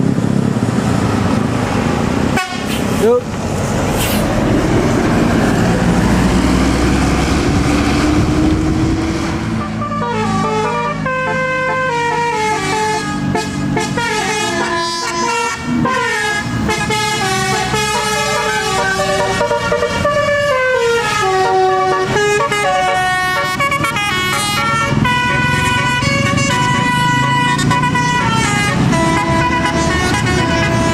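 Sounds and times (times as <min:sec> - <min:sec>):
large vehicle engine: 0:00.0 - 0:30.9
musical bus horn tune: 0:02.3 - 0:02.8, 0:09.5 - 0:30.9.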